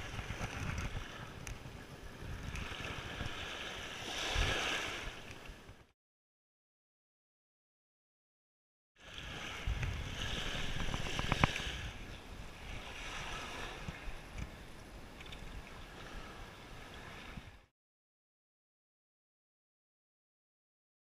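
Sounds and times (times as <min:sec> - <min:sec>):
surf washing: 0:00.0 - 0:05.8, 0:09.0 - 0:17.7
wind buffeting microphone: 0:00.0 - 0:05.8, 0:09.1 - 0:17.7.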